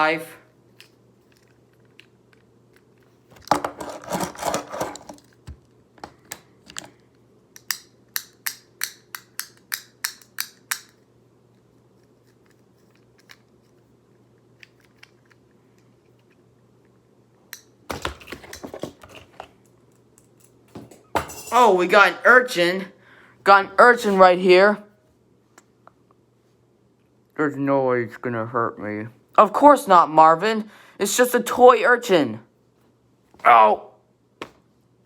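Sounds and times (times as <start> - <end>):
fidget cube sharp clicks: 7.6 - 11.0.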